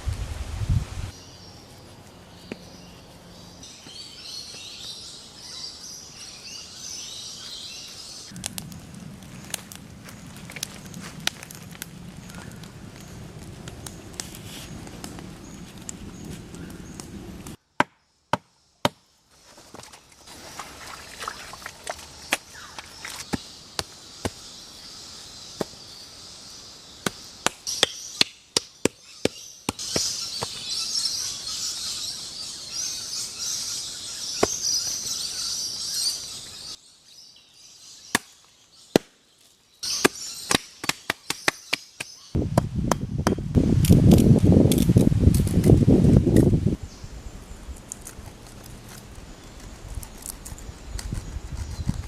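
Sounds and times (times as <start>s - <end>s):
steady hissing noise: 0.0s - 17.6s, 20.3s - 28.9s
wood chopping strikes: 17.8s - 19.0s, 38.9s - 39.2s.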